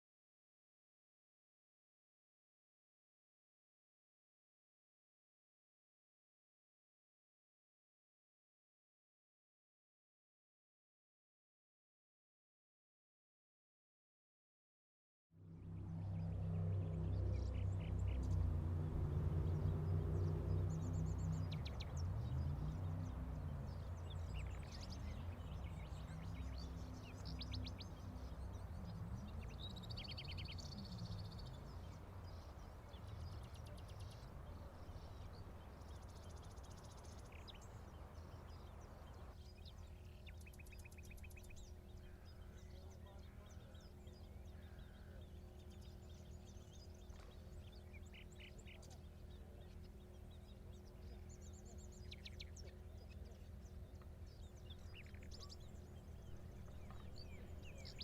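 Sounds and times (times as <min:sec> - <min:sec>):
low wavering rumble: 0:15.4 - 0:39.2, 0:48.5 - 0:58.0
small birds chirping: 0:15.7 - 0:58.0.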